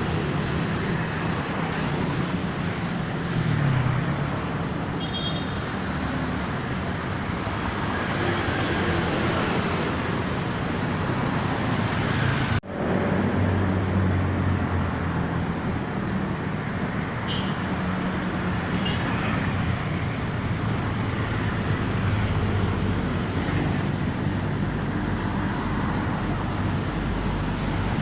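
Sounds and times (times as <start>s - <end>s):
air compressor humming: 0.0s - 3.8s, 9.1s - 28.0s
air hissing: 0.0s - 3.9s, 10.0s - 12.6s, 13.2s - 24.0s, 25.2s - 28.0s.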